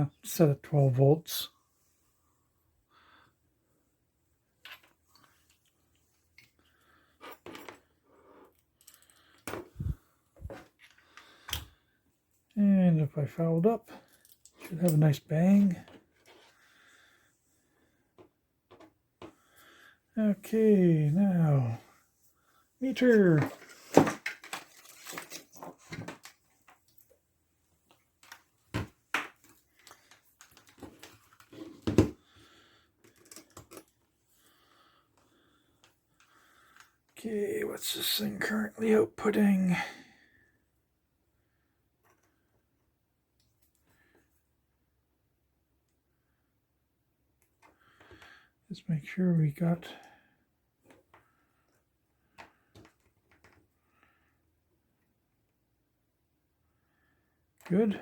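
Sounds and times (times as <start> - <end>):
wire leads clicking and rustling: 22.9 - 27.2, 27.8 - 32.4, 33.0 - 34.1.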